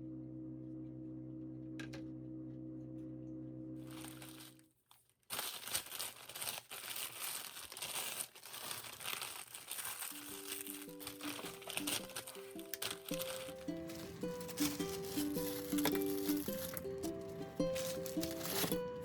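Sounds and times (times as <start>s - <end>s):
dense crinkling and crackling: 3.8s - 19.0s
soft background music: 9.8s - 19.0s.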